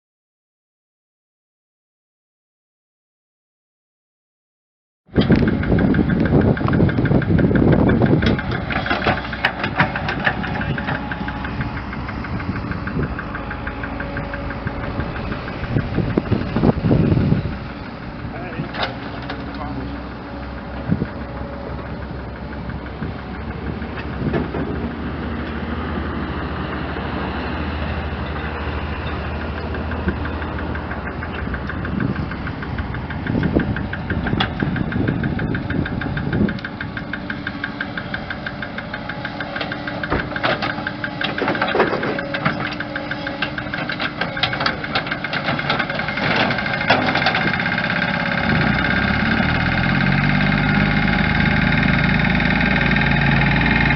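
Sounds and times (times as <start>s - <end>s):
engine running steadily: 5.1s - 53.9s
knocks and rattles: 29.6s - 49.1s.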